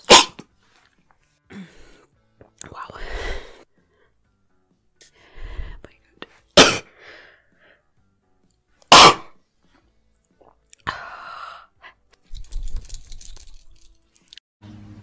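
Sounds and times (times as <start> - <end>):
woman sneezing: 6.6 - 7.0, 8.9 - 9.3.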